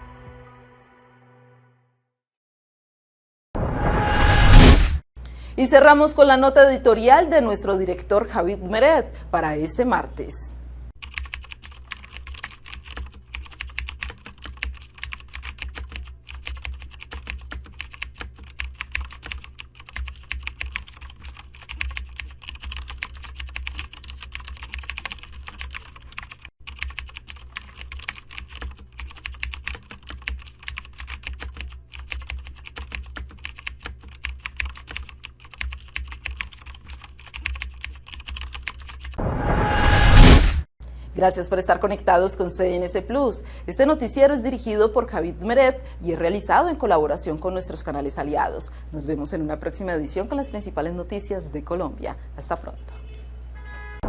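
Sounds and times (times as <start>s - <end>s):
keyboard typing: 11.0s - 39.2s.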